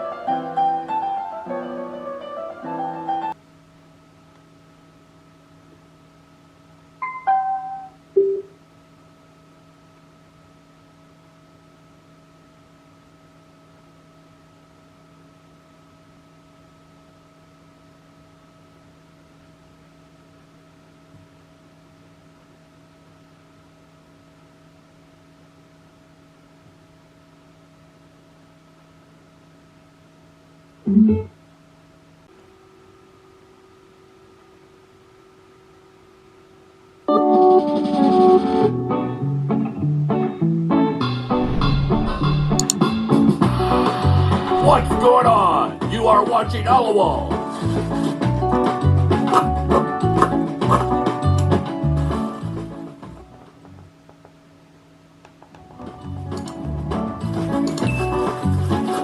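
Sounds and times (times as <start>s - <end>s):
piano music: 0.0s - 3.4s, 7.0s - 7.9s
faint electronic hum: 0.0s - 37.6s, 44.0s - 47.3s
speaker prompt beeps: 7.0s - 8.5s
short pitched tone: 7.0s - 8.6s.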